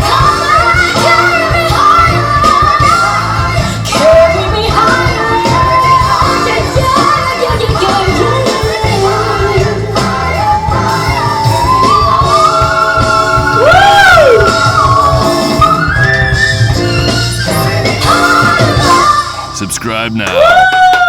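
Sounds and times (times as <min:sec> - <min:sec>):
woman singing gospel-pop ballad: 0:00.0 - 0:19.4
full band playing: 0:19.4 - 0:20.6.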